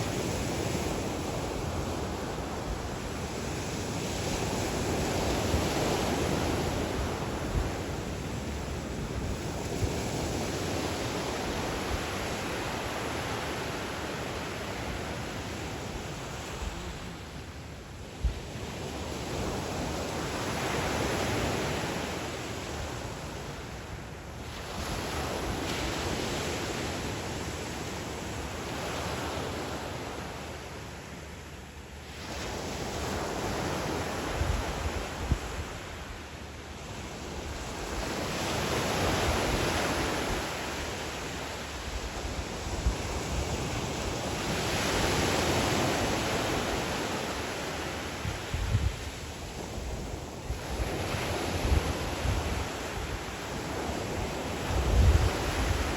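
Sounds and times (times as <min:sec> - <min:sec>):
waves breaking on shore: 0:00.0 - 0:55.9
wind buffeting microphone: 0:48.2 - 0:55.9.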